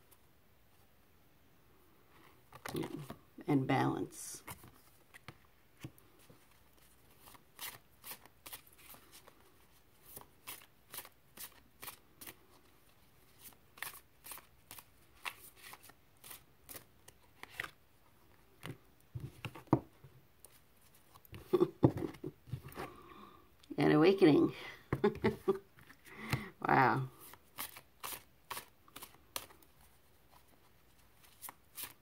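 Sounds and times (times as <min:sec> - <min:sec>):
cards being shuffled: 0:04.4 - 0:12.5, 0:13.3 - 0:19.8, 0:27.1 - 0:32.0.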